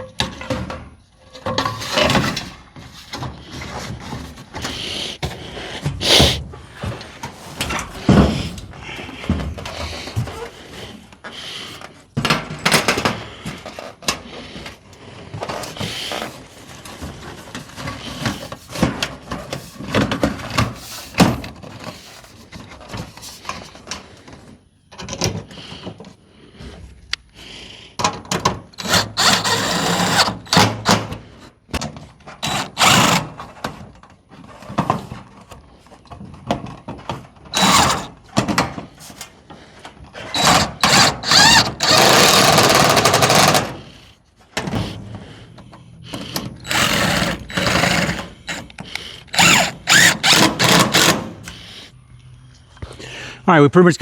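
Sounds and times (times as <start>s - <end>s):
power drill running in bursts: 28.8s - 31.0s, 32.4s - 33.4s, 37.6s - 38.2s, 40.3s - 43.8s, 46.6s - 48.7s, 49.3s - 51.3s
knocks and rattles: 40.2s - 43.8s.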